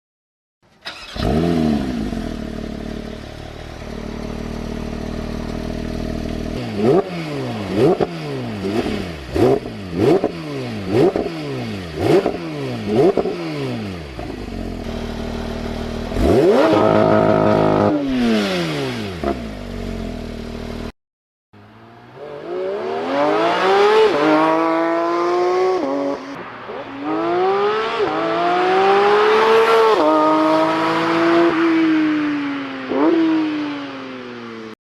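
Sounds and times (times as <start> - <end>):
car engine revving and accelerating: 0.9 - 3.6, 4.2 - 20.8, 21.7 - 32.0.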